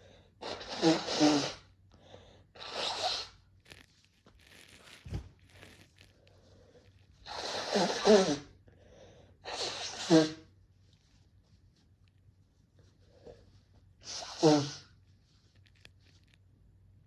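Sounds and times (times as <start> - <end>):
person sneezing: 0.4 - 1.6, 7.3 - 8.5, 9.5 - 10.5, 14.0 - 14.9.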